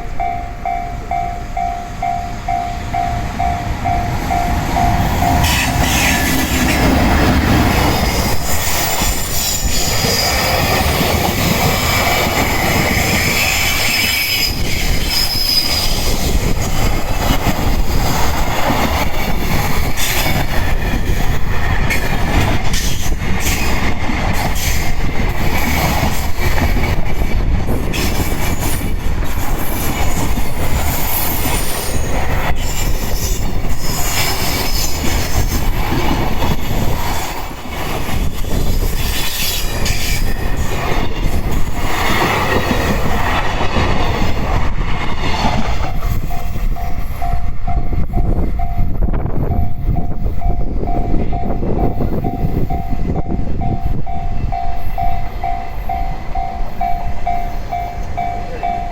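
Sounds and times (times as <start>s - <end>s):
crossing bell dinging: 0.0s - 11.5s, 45.6s - 58.9s
train wheels rumbling and squealing: 0.0s - 58.9s.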